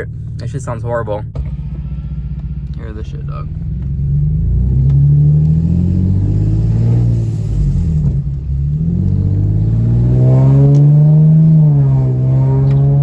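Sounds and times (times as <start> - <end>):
car engine with exhaust leak: 0.0 - 13.0.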